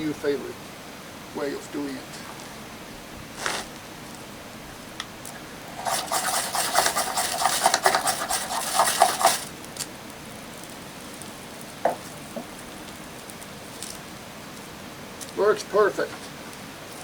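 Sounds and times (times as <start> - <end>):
firesteel scraped with metal striker: 5.8 - 9.5.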